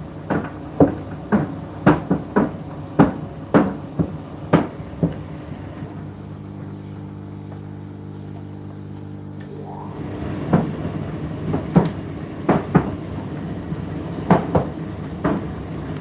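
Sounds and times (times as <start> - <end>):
dryer motor hum: 0.0 - 16.0.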